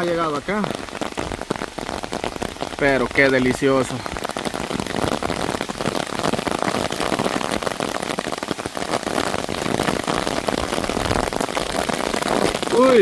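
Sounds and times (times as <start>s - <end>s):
heavy rain falling: 0.0s - 13.0s
gusting wind: 9.1s - 13.0s.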